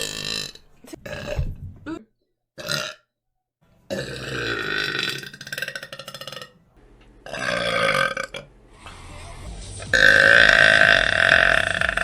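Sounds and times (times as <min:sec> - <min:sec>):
girl burping: 0:10.3 - 0:12.0.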